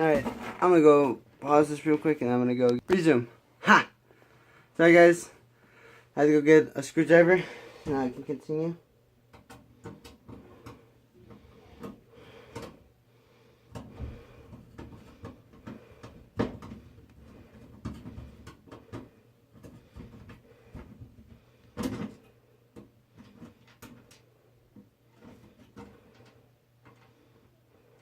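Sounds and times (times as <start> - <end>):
knocks and rattles on computer case: 14.6 - 22.2.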